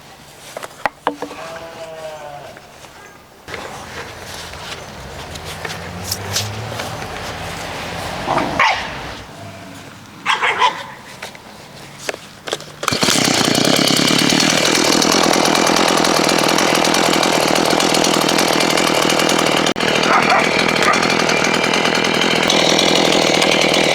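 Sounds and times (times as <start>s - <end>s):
chainsaw running at high revs: 3.5s - 9.9s, 12.8s - 23.9s.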